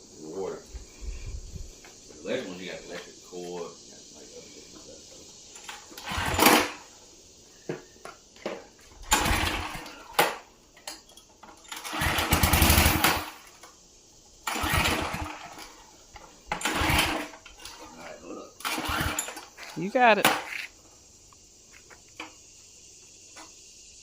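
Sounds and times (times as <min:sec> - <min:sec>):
small engine cranking: 0:05.6 - 0:06.8, 0:09.0 - 0:10.2, 0:11.5 - 0:13.6, 0:14.4 - 0:15.8, 0:16.5 - 0:20.6.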